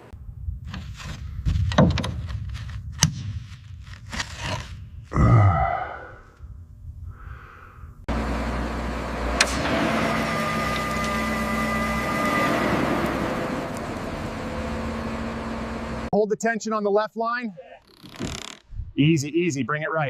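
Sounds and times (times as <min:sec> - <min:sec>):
crane engine running: 0:08.1 - 0:16.1.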